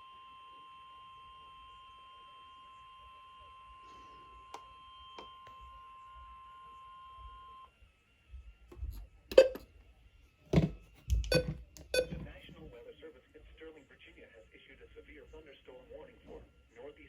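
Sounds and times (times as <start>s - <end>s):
steady warning alarm tone: 10.6s - 12.7s.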